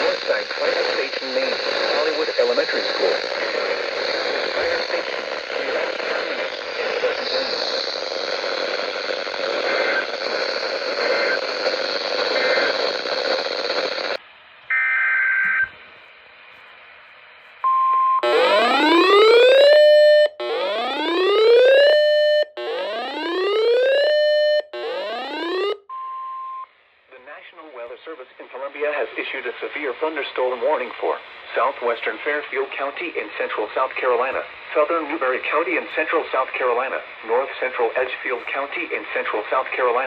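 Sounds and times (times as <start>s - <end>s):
radio static hiss: 0.0s - 14.3s, 27.0s - 40.0s
rising siren whoops: 18.2s - 25.8s
short beep: 25.9s - 26.7s.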